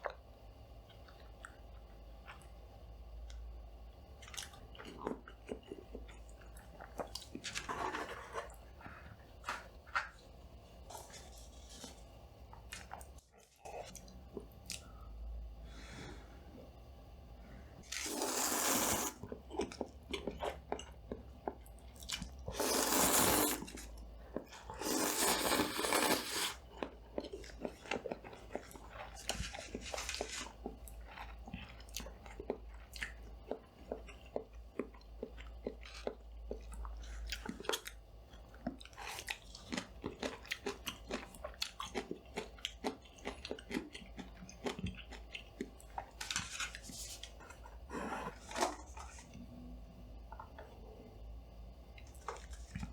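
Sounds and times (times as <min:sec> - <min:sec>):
low hum from studio light: 0:00.0 - 0:52.9
chewing with wet mouth clicks: 0:04.2 - 0:07.6, 0:12.5 - 0:15.0, 0:19.2 - 0:22.4, 0:26.6 - 0:47.6.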